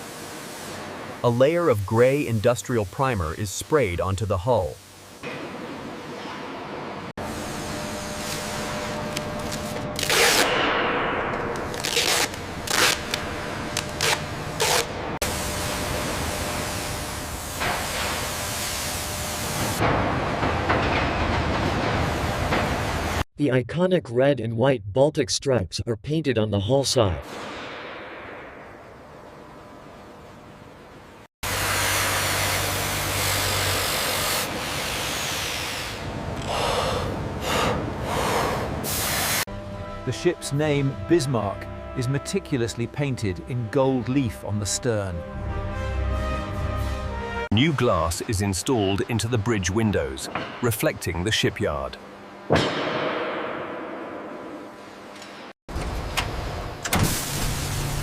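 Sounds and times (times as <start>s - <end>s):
spray gun hissing: 0.0s - 5.2s, 15.2s - 19.8s, 31.5s - 36.0s, 36.6s - 39.5s.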